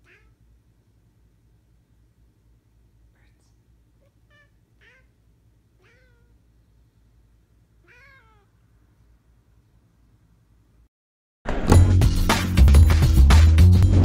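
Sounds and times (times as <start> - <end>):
cat chirping: 0.0 - 0.4, 4.0 - 6.5, 7.8 - 8.6.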